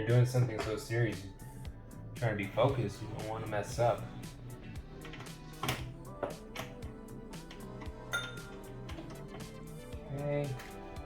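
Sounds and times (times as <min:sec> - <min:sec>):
background music: 0:00.0 - 0:11.0.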